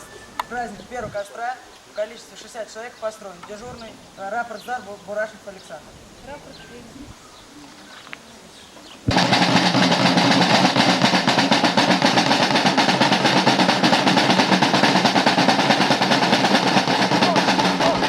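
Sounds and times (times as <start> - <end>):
snare drum roll: 9.1 - 18.0.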